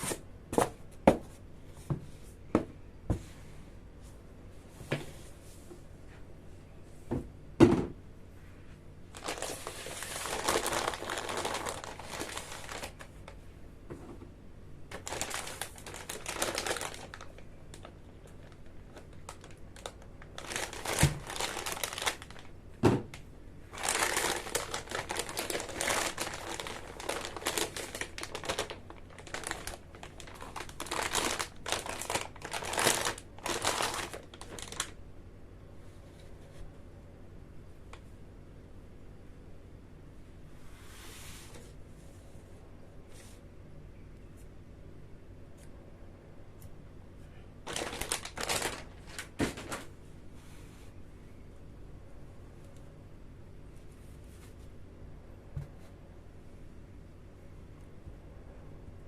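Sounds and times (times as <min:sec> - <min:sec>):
packaging crinkling: 0:09.1 - 0:13.4, 0:14.9 - 0:35.0, 0:47.6 - 0:49.9.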